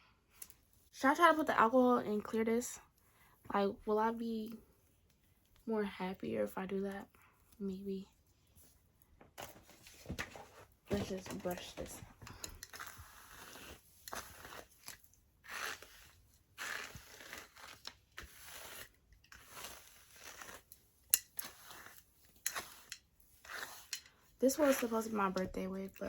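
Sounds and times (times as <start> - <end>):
brush swishing through wig hair: 12.6 - 20.7, 21.4 - 26.0.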